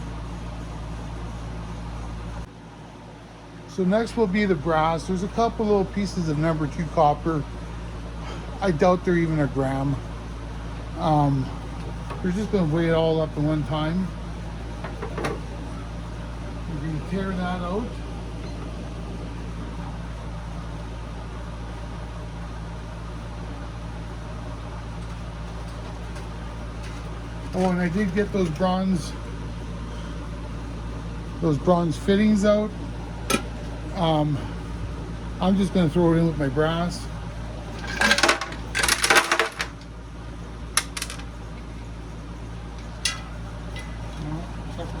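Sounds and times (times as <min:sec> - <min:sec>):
low mechanical hum: 0:00.0 - 0:45.0
metal scrap clinking: 0:37.7 - 0:39.8, 0:43.0 - 0:44.0.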